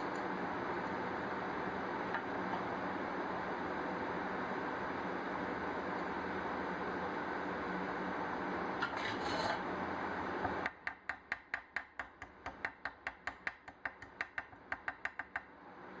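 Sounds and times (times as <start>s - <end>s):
scraping strokes on metal: 8.8s - 9.7s.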